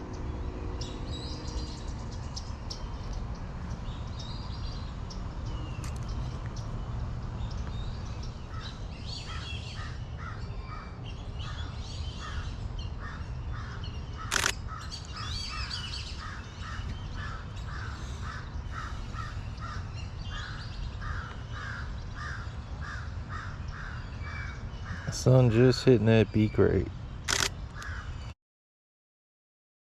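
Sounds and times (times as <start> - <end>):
small birds chirping: 0.0 - 28.3
sharp click: 5.8 - 6.1, 14.3 - 14.6, 27.3 - 27.9.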